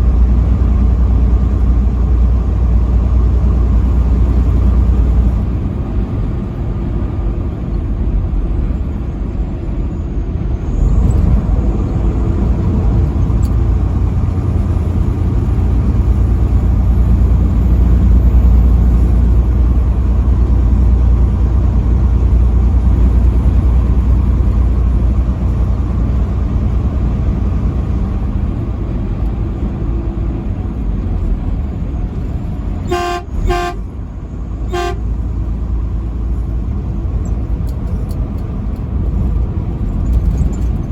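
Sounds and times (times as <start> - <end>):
vehicle driving on highway: 0.0 - 40.9
truck horn blasts: 32.8 - 34.0, 34.6 - 35.3.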